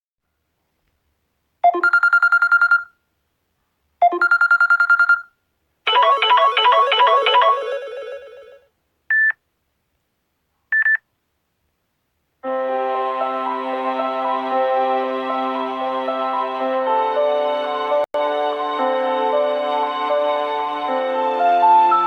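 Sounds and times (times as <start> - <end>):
melodic chime: 5.9 - 8.6
rapid electronic ringtone trill: 5.9 - 8.6.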